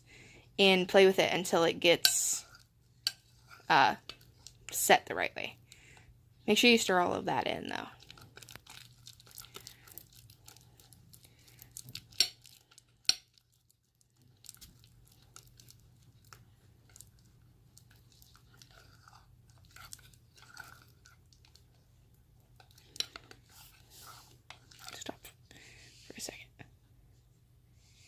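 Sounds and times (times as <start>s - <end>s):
slime crackling and squelching: 7.5s - 25.3s.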